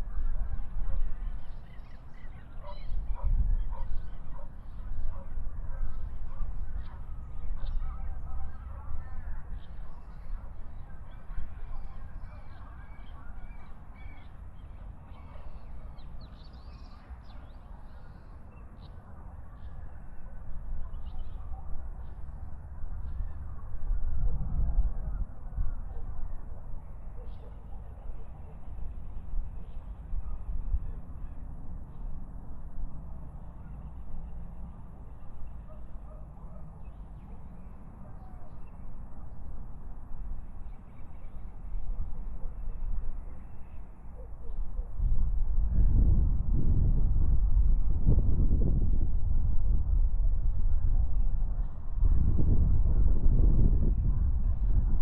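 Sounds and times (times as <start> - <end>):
bird calls and chirps: 0.4 - 22.3, 26.8 - 32.1
steady low rumble: 45.0 - 55.0.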